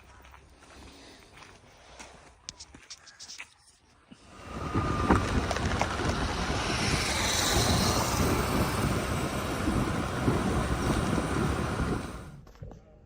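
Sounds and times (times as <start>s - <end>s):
vehicle passing by: 4.3s - 12.3s.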